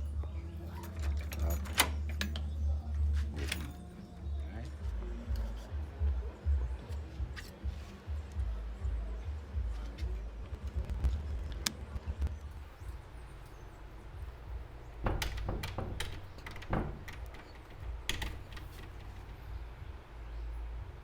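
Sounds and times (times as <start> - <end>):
door lock clicks: 14.3 - 19.5.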